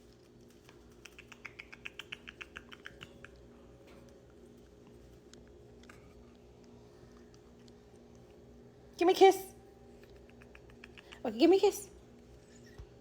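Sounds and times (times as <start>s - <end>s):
parrot clicking: 0.6s - 3.4s, 10.0s - 11.3s.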